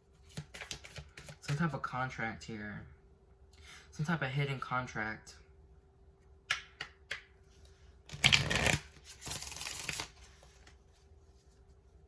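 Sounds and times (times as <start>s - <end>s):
deck of cards shuffled: 8.1s - 11.0s.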